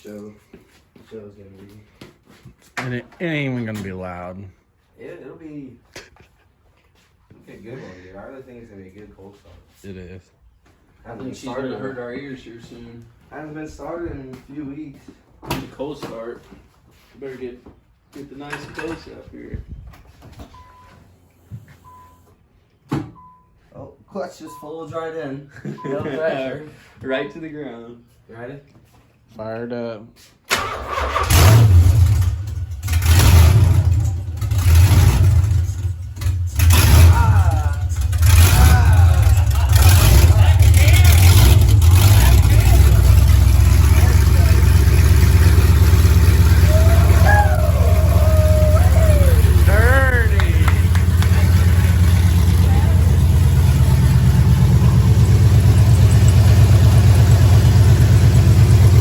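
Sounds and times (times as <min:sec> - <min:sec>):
engine revving: 0:30.6 - 0:59.0.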